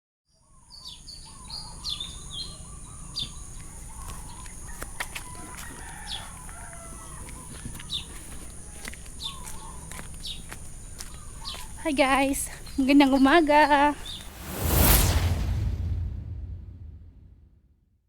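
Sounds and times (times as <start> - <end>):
wavering birdsong: 0.3 - 14.4
sharp falling bird chirps: 14.0 - 17.3.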